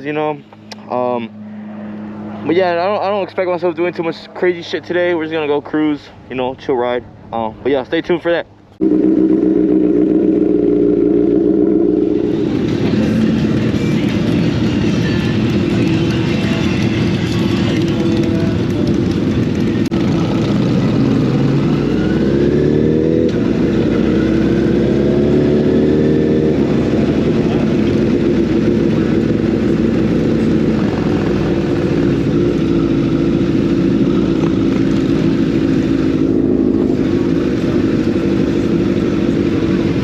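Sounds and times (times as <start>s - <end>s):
motorcycle engine revving: 8.8s - 40.0s.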